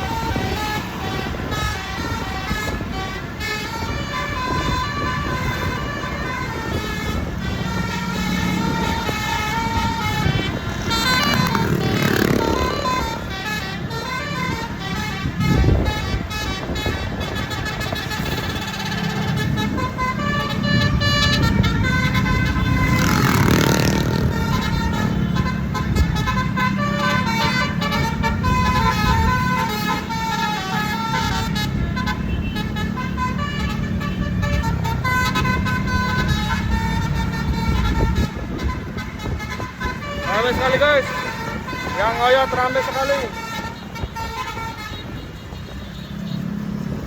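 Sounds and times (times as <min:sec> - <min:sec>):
bus horn playing fast tune: 0:00.0 - 0:46.4.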